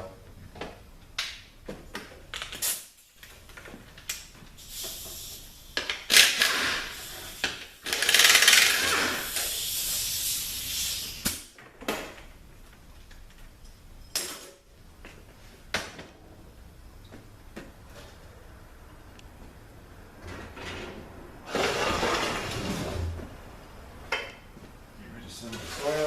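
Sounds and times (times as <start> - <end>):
ratchet wrench ratcheting: 6.1 - 9.7.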